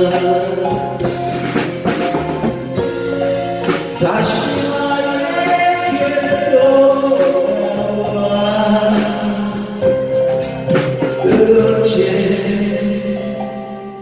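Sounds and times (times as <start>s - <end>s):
drum and cymbal strikes: 0.0s - 12.8s
keyboard and drum accompaniment: 0.0s - 14.0s
person singing: 0.0s - 14.0s.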